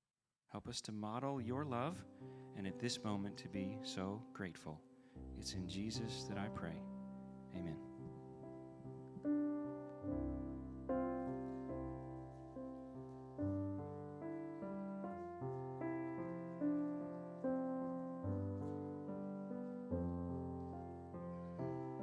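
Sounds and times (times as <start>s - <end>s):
soft piano chords: 1.2s - 22.0s.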